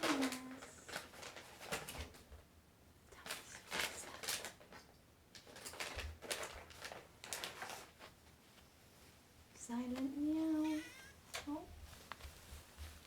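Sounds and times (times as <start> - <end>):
handling rustles: 10.8 - 13.0.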